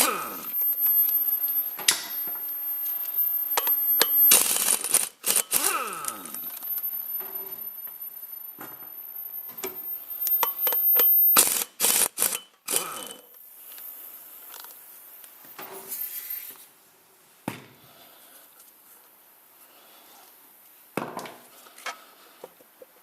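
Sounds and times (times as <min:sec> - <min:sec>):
loud noisy bursts: 0:00.0 - 0:07.8, 0:11.3 - 0:13.3.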